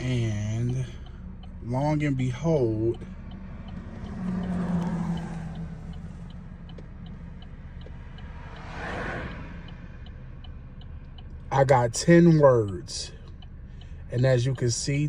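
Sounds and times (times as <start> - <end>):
faint ticking: 0.0 - 15.0
low engine rumble: 0.0 - 15.0.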